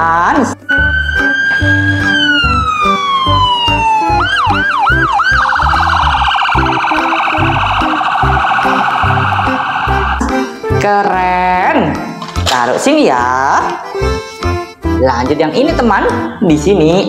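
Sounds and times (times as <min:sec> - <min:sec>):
background music with beat: 0:00.4 - 0:16.9
electronic siren: 0:00.7 - 0:10.6.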